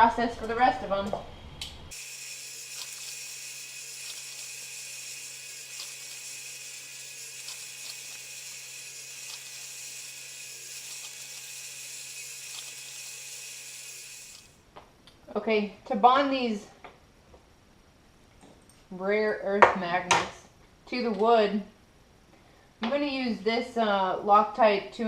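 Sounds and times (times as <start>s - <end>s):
drill press humming: 1.9s - 14.6s.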